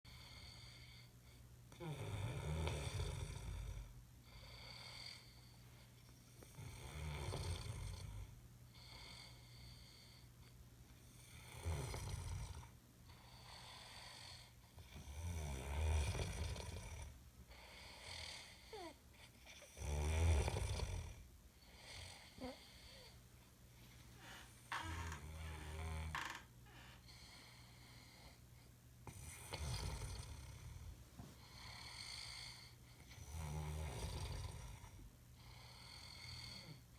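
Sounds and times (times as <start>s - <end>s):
man snoring: 1.8s - 3.9s, 6.5s - 8.3s, 11.3s - 12.7s, 15.0s - 17.1s, 19.7s - 21.2s, 24.7s - 26.5s, 29.1s - 30.9s, 31.6s - 36.8s
soft breathing: 3.8s - 6.4s, 8.7s - 10.7s, 21.2s - 33.2s.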